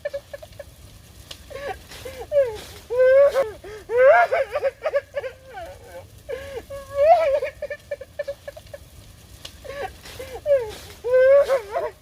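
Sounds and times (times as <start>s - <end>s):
man wailing and sobbing: 1.5s - 8.5s, 9.7s - 12.0s.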